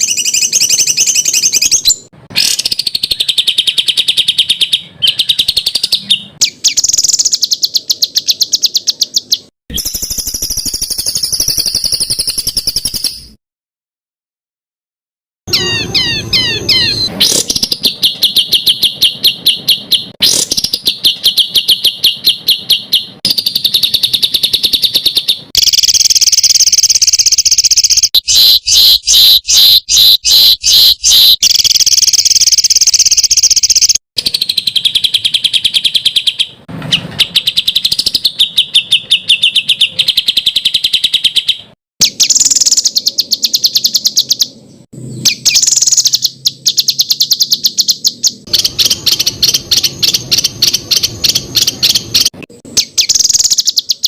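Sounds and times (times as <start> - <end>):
songbird harsh rapid calls: 15.5 - 44.5, 45.1 - 54.0.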